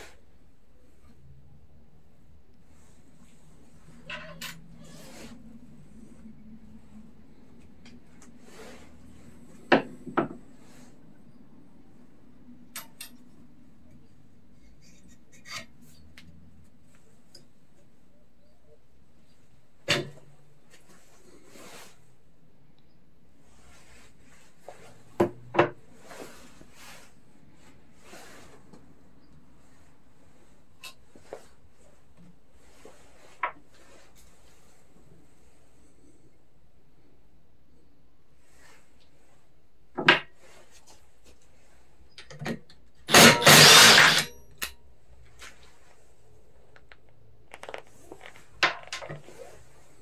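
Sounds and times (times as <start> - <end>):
parts and tools scraping: 2.8 - 6.2, 14.6 - 16.2, 43.1 - 44.7
harsh burst of power tool: 43.1 - 44.3.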